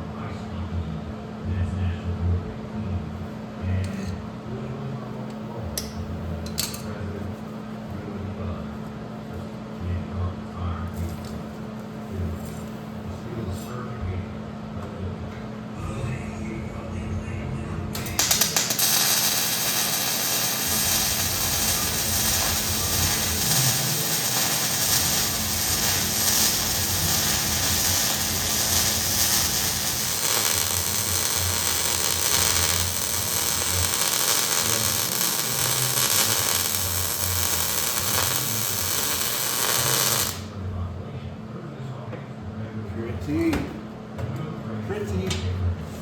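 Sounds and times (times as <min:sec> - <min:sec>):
arc welding crackling hiss: 0:18.0 - 0:40.5.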